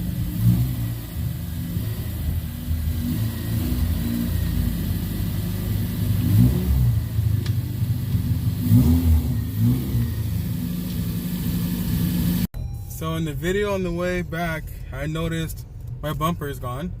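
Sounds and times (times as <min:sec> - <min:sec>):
car engine accelerating: 0:00.0 - 0:12.5.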